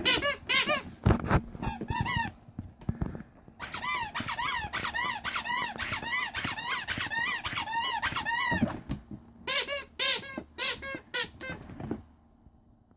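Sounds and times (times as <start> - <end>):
rubber squeeze toy squeaking: 0.0 - 0.9, 1.6 - 2.4, 3.6 - 8.8, 9.4 - 11.7.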